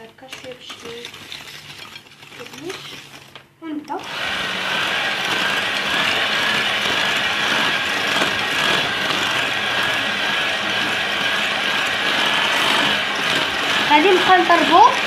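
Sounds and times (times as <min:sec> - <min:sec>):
electric hand mixer running: 0:03.9 - 0:15.0.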